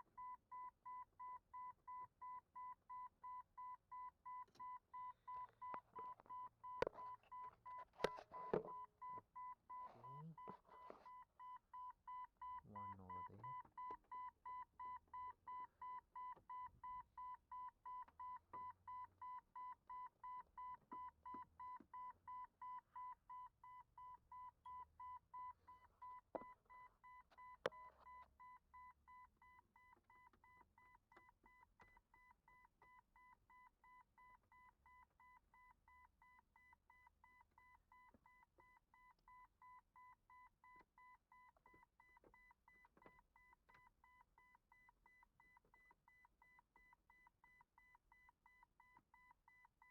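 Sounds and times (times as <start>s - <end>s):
dashboard warning chime beeping: 0.2s - 29.2s.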